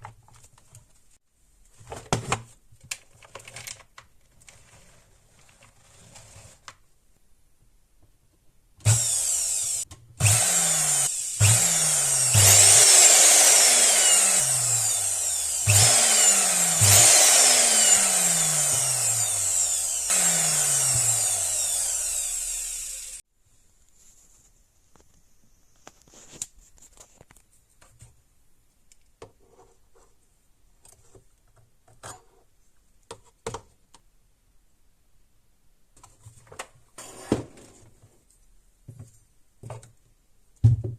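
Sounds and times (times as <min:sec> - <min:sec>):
small electric motor whirring: 0:08.8 - 0:23.2.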